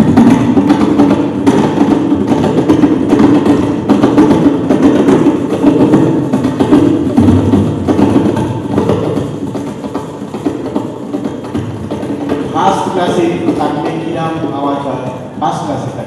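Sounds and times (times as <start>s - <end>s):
tabla and drum ensemble: 0.0s - 16.0s.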